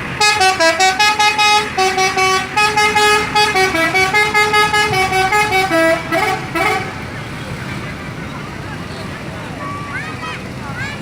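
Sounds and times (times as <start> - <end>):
multi-tone musical air horn: 0.1 - 7.0.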